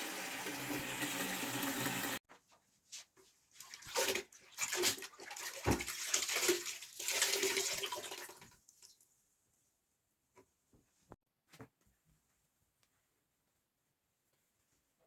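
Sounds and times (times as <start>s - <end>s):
water running and splashing: 0.0s - 2.2s, 3.6s - 8.9s.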